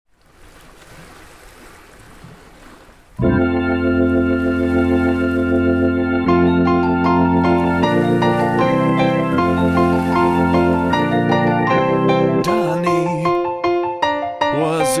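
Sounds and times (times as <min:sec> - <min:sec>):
organ sustained chord: 0:03.2 - 0:13.6.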